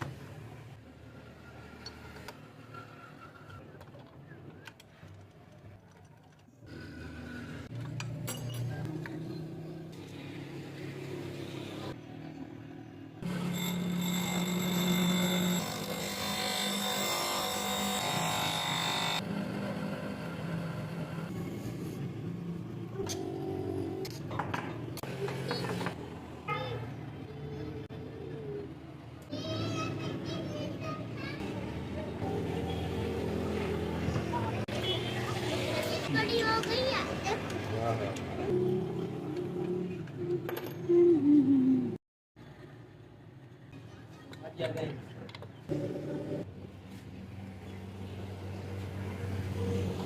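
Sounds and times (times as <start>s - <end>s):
electric planer whining: 13.2s - 20.9s.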